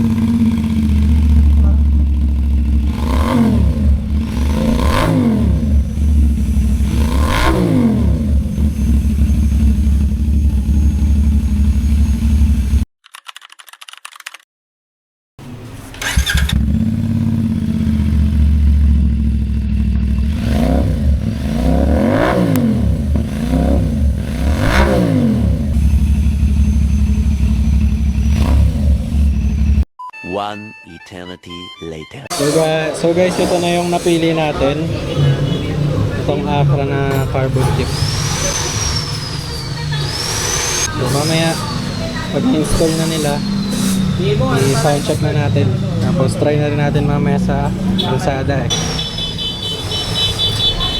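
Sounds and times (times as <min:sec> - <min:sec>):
motorcycle engine idling: 0:00.0 - 0:12.8, 0:16.0 - 0:29.8, 0:32.4 - 0:50.9
motorcycle engine revving: 0:00.0 - 0:12.8, 0:15.4 - 0:29.8, 0:32.3 - 0:50.9.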